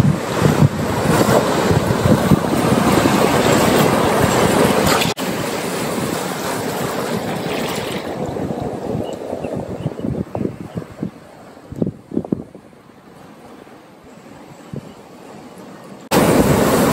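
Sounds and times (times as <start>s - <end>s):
wind buffeting microphone: 0.0s - 5.2s, 6.0s - 12.9s
rushing water: 0.0s - 16.9s.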